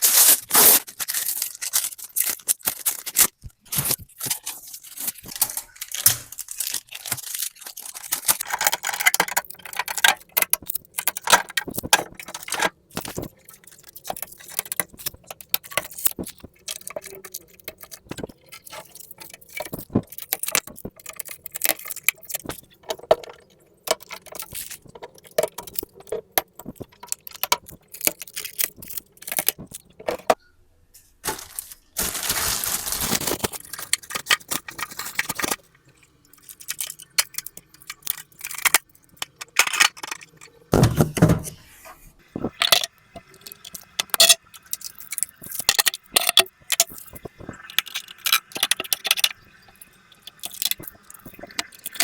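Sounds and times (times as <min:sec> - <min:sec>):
packaging rustling and crinkling: 0:00.0 - 0:30.4, 0:31.2 - 0:35.7.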